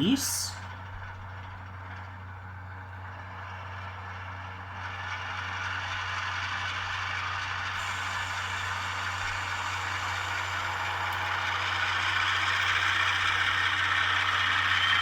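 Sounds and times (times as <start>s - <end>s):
low steady hum: 0.0s - 0.8s
air brake hissing: 7.8s - 13.6s.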